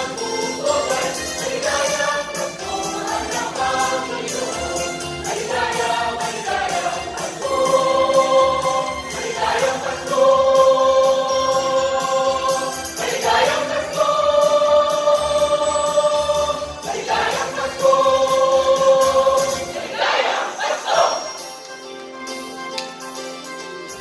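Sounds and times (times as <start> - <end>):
choir singing a carol: 0.0 - 21.5.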